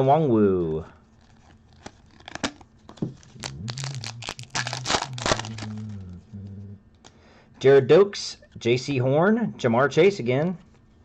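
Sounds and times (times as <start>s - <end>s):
low steady hum: 0.0s - 11.0s
foil pack crinkling and tearing: 1.1s - 5.8s.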